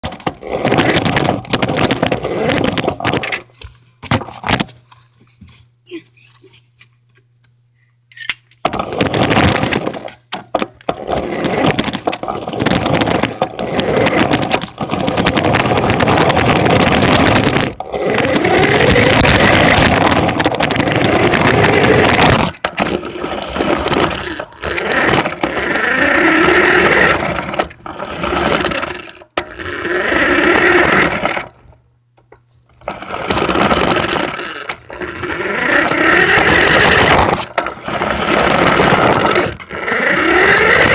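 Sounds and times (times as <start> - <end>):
radio-controlled truck motor whining: 12.6 - 31.5, 32.9 - 40.9.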